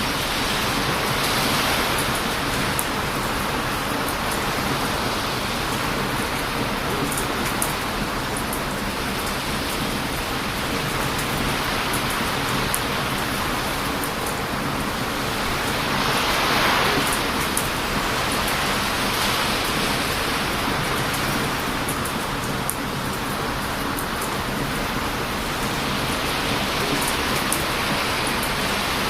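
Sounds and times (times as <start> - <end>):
surf breaking on a beach: 0.0 - 29.0
wind: 0.0 - 29.0.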